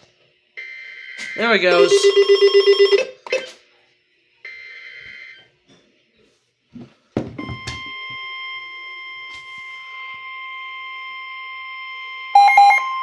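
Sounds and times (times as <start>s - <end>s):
steady alert tone: 1.4s - 3.5s.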